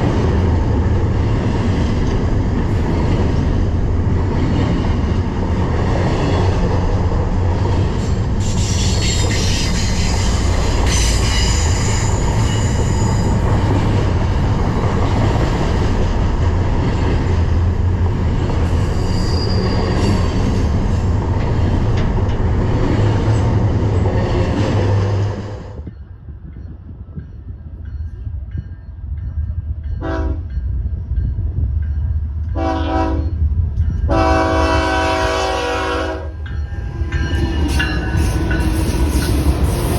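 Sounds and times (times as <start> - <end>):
freight train rumbling past: 0.0 - 39.9
wheel squeal: 18.9 - 20.2
diesel locomotive horn: 30.0 - 30.6, 32.5 - 33.4, 34.1 - 36.5.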